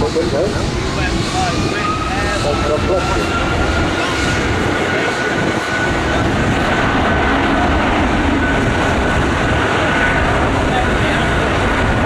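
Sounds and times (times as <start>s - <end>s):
jet engines rushing: 0.0s - 12.0s.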